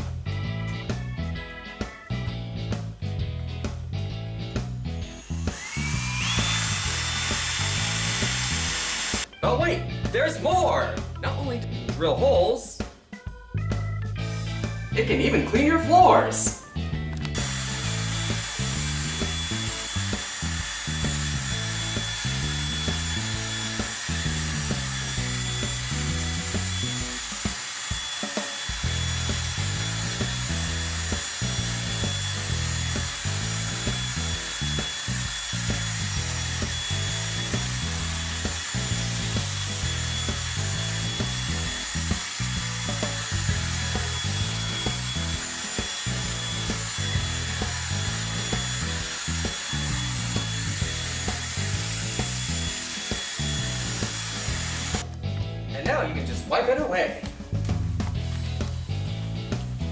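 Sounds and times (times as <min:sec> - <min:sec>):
background music with bass line: 0:00.0 - 0:27.4, 0:28.7 - 0:59.9
drill scrub brush scrubbing floor: 0:05.0 - 0:09.3, 0:17.3 - 0:55.1.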